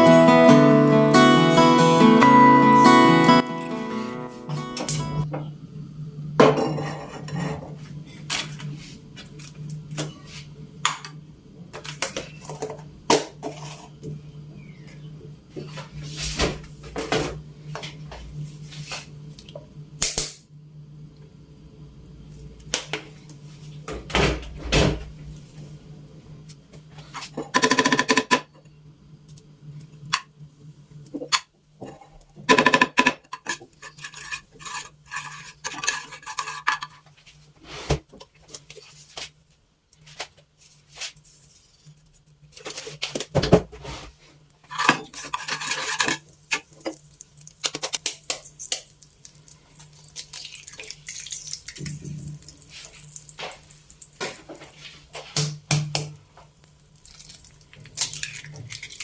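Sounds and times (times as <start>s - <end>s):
dishes and cutlery clinking: 6.4s - 7.7s.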